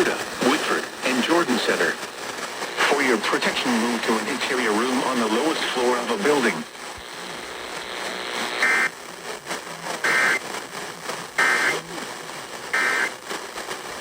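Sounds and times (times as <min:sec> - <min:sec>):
faint radio hiss: 0:00.0 - 0:14.0
two-tone digital data buzzes: 0:07.0 - 0:09.0, 0:10.0 - 0:10.5, 0:11.4 - 0:11.8, 0:12.7 - 0:13.3.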